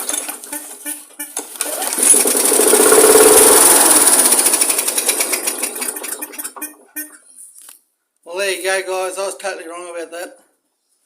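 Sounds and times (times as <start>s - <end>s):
mower engine pull-started: 1.4s - 6.9s
mower engine running rough: 1.6s - 6.8s.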